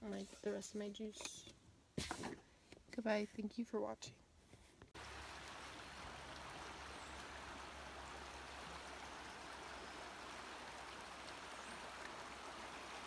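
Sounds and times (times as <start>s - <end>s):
flowing water rushing: 5.0s - 13.0s.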